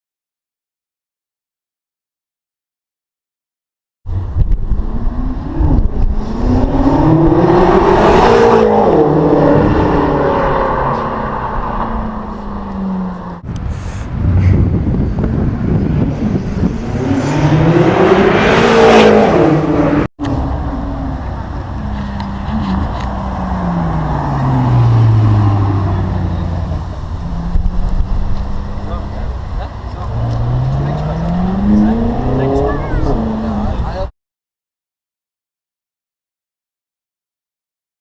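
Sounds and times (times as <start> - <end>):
car engine accelerating hard: 4.6 - 34.1.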